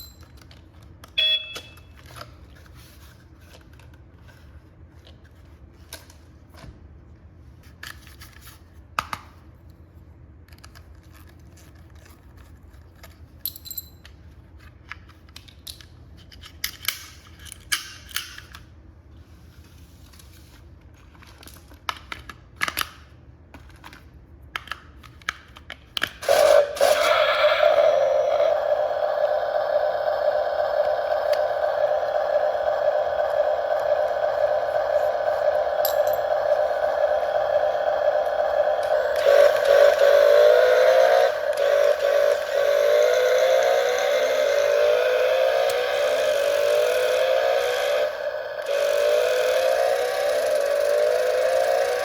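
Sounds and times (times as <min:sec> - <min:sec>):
short high beep: 0:01.2 - 0:01.9
faint steady hum: 0:26.2 - 0:52.0.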